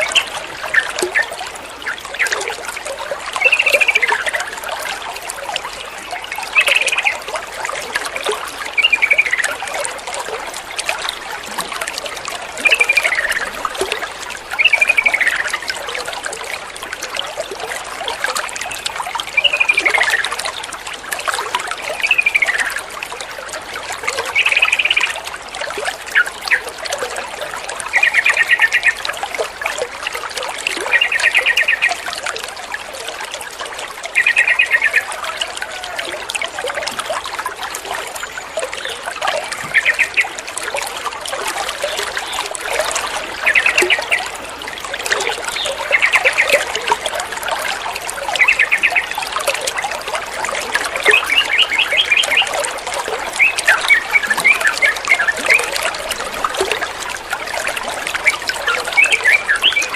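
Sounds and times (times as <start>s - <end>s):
water trickling: 0.0s - 59.9s
bird calling whistles and trills: 53.4s - 55.8s, 58.2s - 59.9s.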